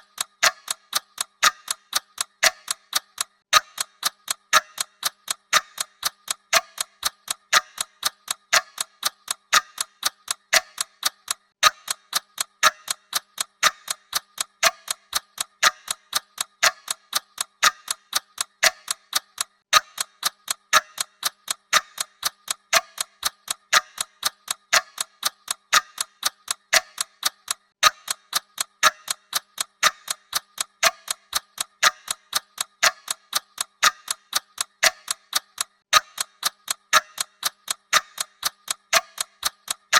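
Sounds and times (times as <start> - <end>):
mechanical clock ticking: 0.0 - 39.9.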